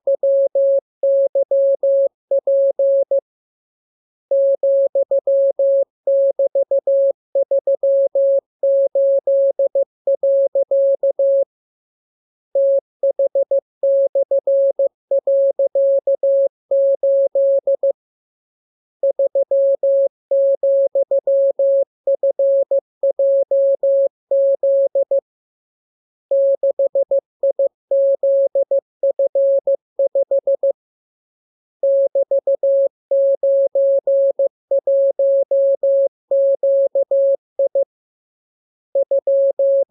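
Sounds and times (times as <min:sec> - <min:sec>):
morse code tone: 0:00.2 - 0:03.2, 0:19.1 - 0:25.2, 0:31.8 - 0:37.8, 0:39.0 - 0:39.9.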